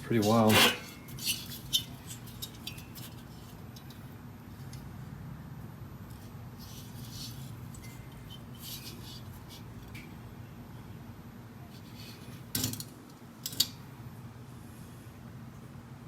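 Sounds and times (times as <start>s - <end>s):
steady low hum: 0.0s - 16.0s
metal part clinking and scraping: 0.1s - 4.0s.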